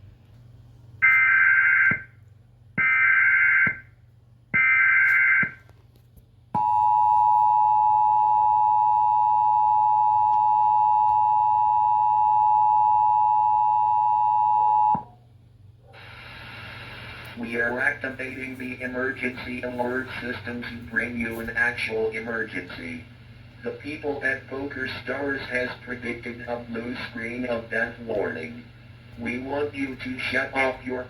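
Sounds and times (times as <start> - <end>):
steady two-tone attention signal: 6.6 - 15.1.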